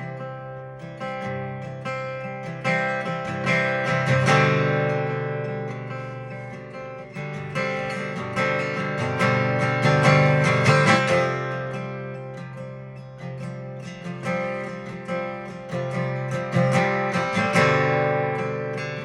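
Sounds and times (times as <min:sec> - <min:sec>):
acoustic guitar strumming chords: 0:00.0 - 0:19.0.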